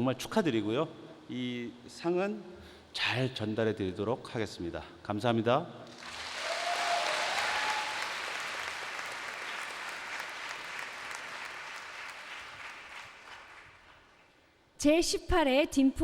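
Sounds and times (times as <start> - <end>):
audience applauding: 5.9 - 14.4.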